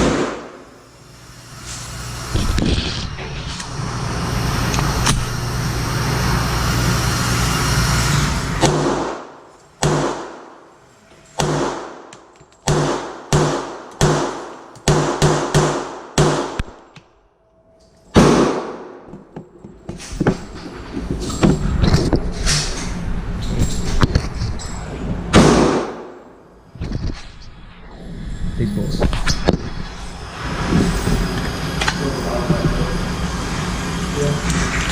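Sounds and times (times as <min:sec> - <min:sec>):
gunshots echoing: 0:00.0 - 0:00.6, 0:08.6 - 0:10.7, 0:11.4 - 0:16.8, 0:18.1 - 0:19.1, 0:25.3 - 0:26.3.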